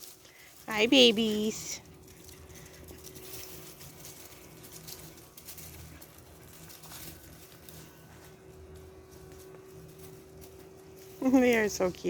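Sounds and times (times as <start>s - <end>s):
puppies scampering: 0.0s - 11.9s.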